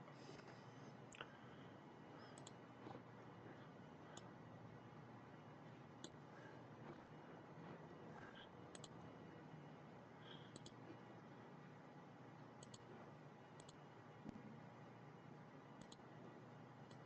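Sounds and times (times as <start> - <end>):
computer mouse clicks: 2.2 - 3.1, 4.1 - 4.4, 6.0 - 6.2, 8.2 - 9.1, 10.3 - 11.0, 12.6 - 12.9, 13.5 - 14.4, 15.8 - 16.1.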